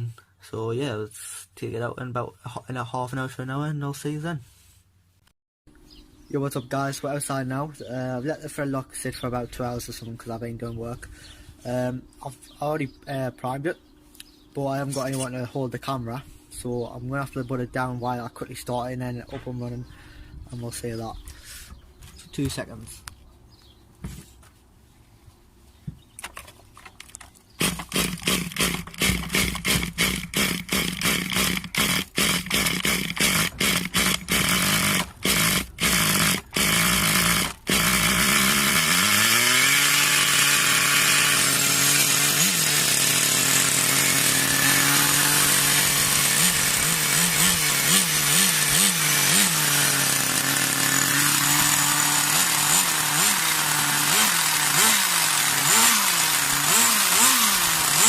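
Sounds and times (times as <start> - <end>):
small engine cranking and firing: 26.3 - 58.0
small engine idling: 27.6 - 58.0.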